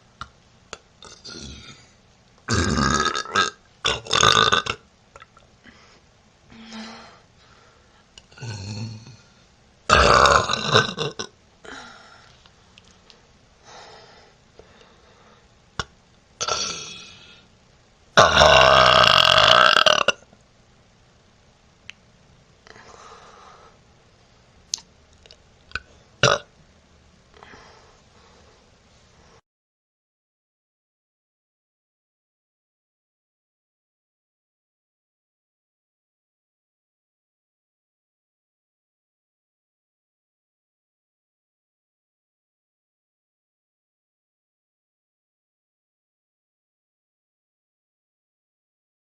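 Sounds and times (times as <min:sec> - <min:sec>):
woman burping: 0:02.5 - 0:05.3, 0:09.9 - 0:11.8, 0:16.4 - 0:17.3, 0:18.2 - 0:20.3, 0:25.7 - 0:26.5.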